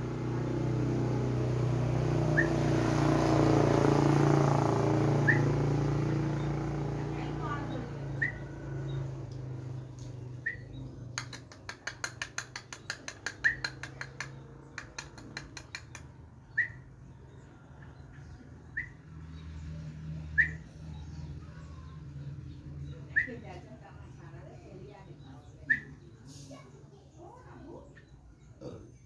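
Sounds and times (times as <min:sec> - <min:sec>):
bird chirps: 0:02.2 - 0:02.9, 0:05.1 - 0:29.0
sharp clicks: 0:11.0 - 0:16.2.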